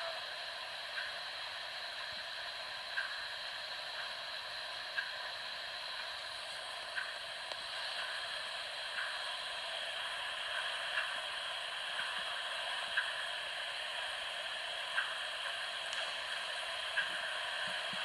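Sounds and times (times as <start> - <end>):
steady hiss: 0.0 - 18.0
faint clicks: 15.0 - 18.0.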